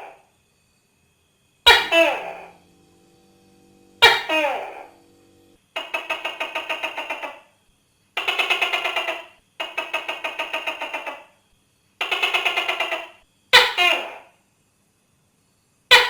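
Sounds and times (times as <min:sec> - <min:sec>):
gecko rasping rattle calls: 0:01.7 - 0:02.5, 0:04.0 - 0:04.9, 0:05.8 - 0:07.5, 0:08.2 - 0:11.3
sharp falling-pitch gecko call: 0:01.7 - 0:07.5.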